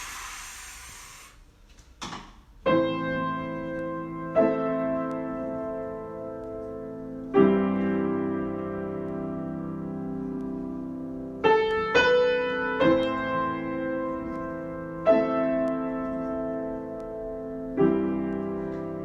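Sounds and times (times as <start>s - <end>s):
short hiss: 0.0s - 1.5s
piano chords ringing: 2.6s - 19.0s.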